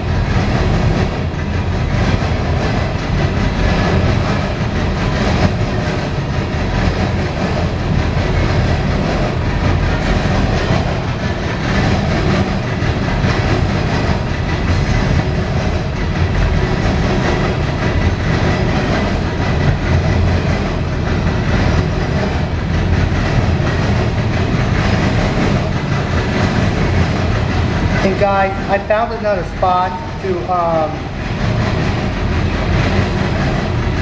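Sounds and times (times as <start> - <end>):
train wheels rumbling on rail: 0.0 - 34.0.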